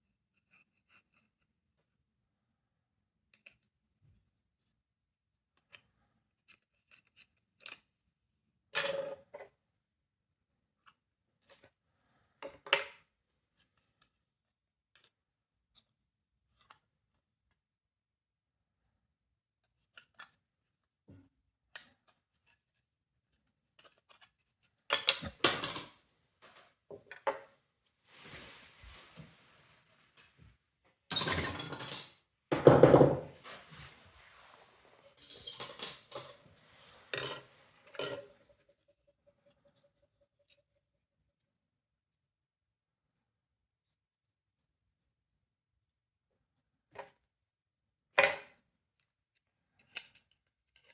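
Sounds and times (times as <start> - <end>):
small parts knocking on work surface: 32.5 - 33.4.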